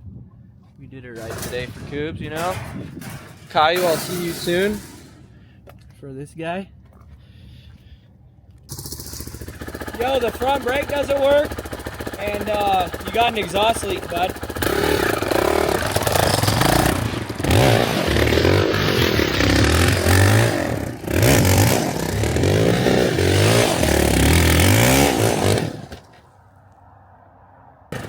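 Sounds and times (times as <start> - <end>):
motorcycle engine revving: 1.2 - 5.4, 8.7 - 26.2.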